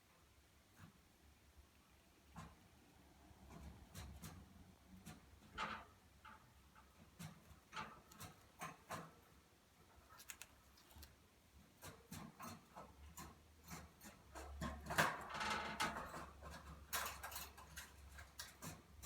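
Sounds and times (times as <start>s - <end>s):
chipmunk claws tapping and scratching: 6.3s - 19.0s.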